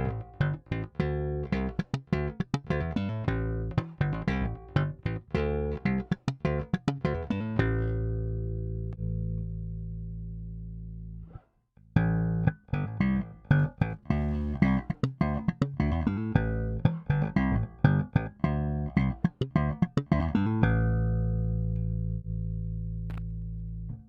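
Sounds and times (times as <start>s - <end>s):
bass guitar plucked notes: 0.0s - 24.0s.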